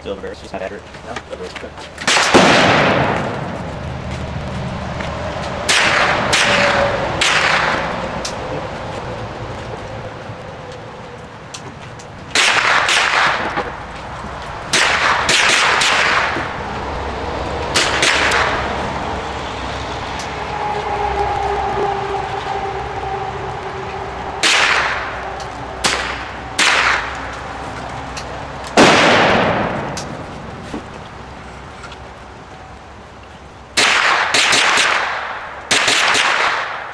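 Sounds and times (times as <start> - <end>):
gunshots: 2.0 - 3.5, 5.7 - 8.0, 12.3 - 13.6, 14.7 - 16.6, 17.7 - 18.7, 24.4 - 25.1, 25.8 - 27.1, 28.8 - 30.0, 33.8 - 36.9.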